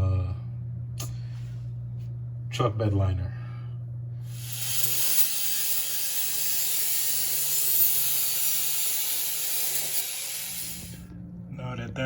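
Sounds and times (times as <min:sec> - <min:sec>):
aerosol can spraying hiss: 0:04.3 - 0:11.0.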